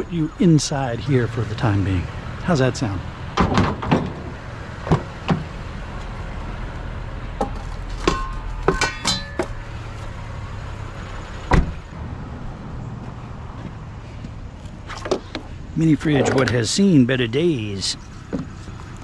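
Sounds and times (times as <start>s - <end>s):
low vehicle hum: 0.0s - 19.0s
scrap metal knocks and clanks: 3.4s - 5.5s, 7.4s - 9.6s.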